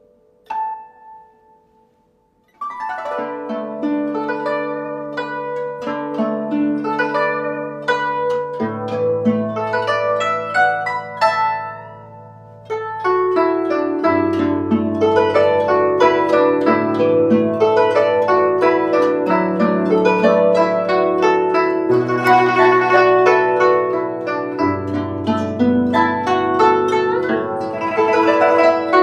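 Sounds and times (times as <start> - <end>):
guzheng plucked melody: 0.0 - 29.0.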